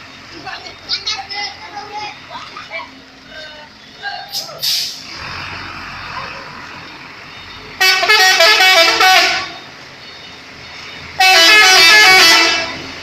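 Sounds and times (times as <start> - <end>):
truck multi-trumpet horn tune: 7.8 - 9.6, 11.2 - 13.0.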